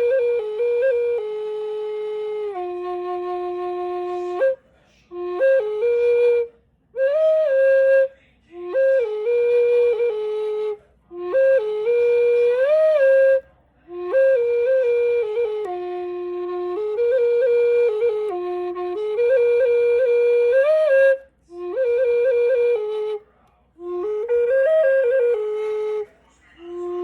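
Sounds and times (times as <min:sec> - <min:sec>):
solo flute melody: 0:00.0 - 0:27.0.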